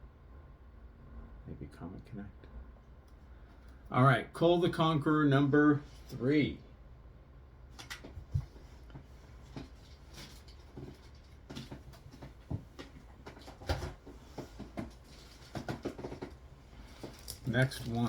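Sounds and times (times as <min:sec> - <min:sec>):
plastic cases handled: 0:09.4 - 0:18.0.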